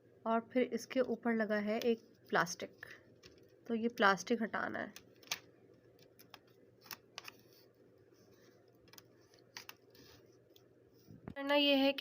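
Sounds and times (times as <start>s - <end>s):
plastic keyboard parts clicking: 4.9s - 5.4s, 6.0s - 7.4s.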